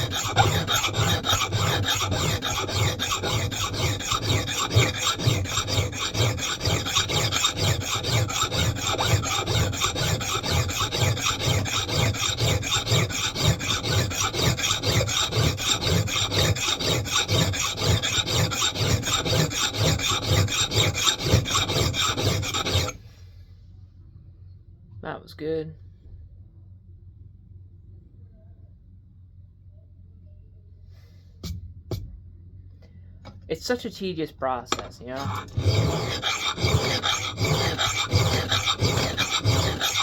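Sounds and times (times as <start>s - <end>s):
file rasping on steel axe: 0.0s - 23.0s, 34.7s - 40.0s.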